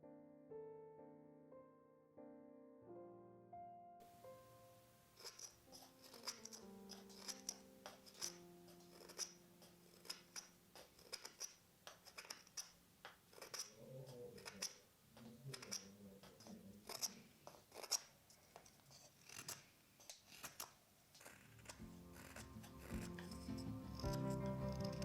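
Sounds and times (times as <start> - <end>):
knife whittling wood: 5.2 - 14.8, 15.5 - 25.0.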